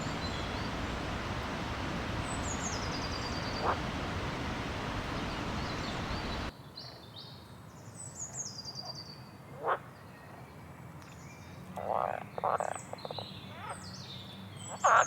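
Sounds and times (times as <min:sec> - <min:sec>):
steady hiss: 0:00.0 - 0:06.5.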